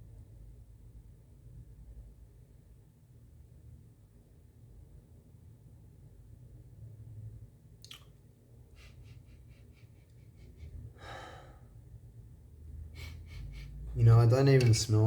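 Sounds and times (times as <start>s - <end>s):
person sniffing: 13.0s - 13.9s.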